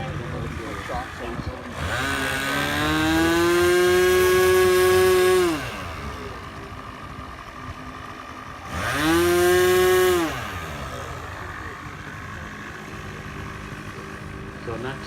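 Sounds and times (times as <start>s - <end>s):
model plane motor whine: 0.0s - 15.0s.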